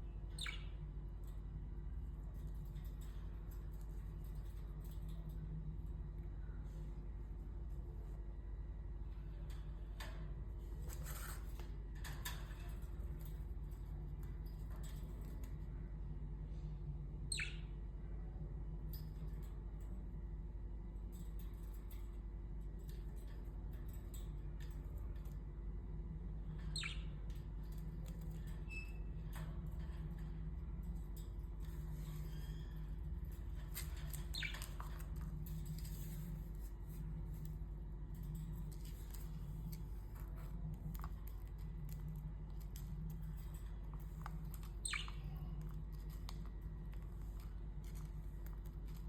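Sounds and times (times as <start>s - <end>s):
steady low hum: 0.0s - 49.0s
budgie chirp: 26.7s - 27.1s.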